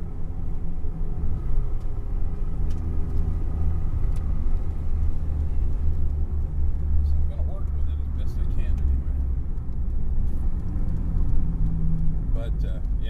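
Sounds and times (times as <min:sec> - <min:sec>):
car engine and road rumble: 0:00.0 - 0:13.0
faint ticks: 0:04.0 - 0:13.0.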